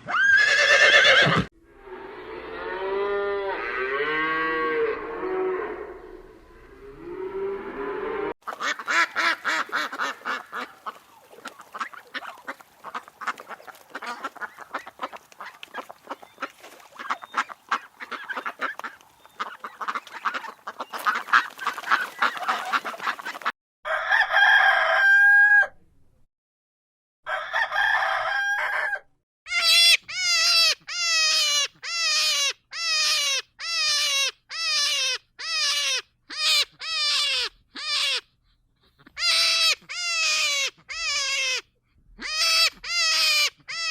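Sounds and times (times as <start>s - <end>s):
falling poultry calls: 6.9s - 25.7s, 42.2s - 43.9s
poultry clucking and squawking: 7.8s - 24.8s.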